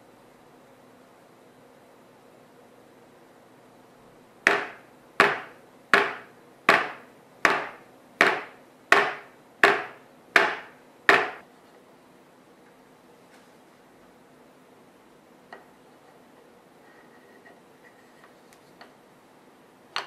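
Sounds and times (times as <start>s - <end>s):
sharp knocks: 4.5s - 11.4s.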